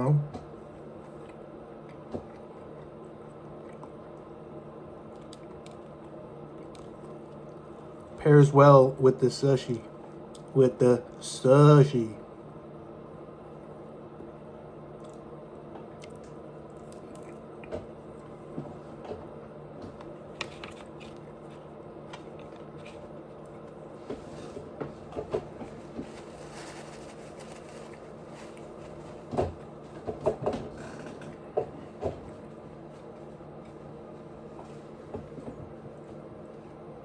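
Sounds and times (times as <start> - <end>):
low background hum: 0.0 - 37.0
chewing and wet mouth smacks: 1.2 - 4.3, 5.1 - 7.9, 15.0 - 17.8.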